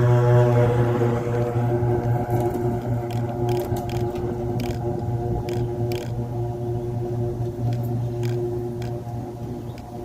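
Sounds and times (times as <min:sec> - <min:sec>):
electric motor hum: 0:00.0 - 0:10.0.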